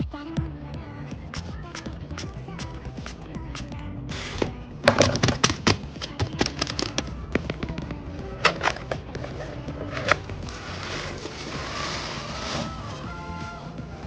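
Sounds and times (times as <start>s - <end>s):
faint background music: 0.0s - 14.0s
packaging clicks and crackles: 4.9s - 7.6s.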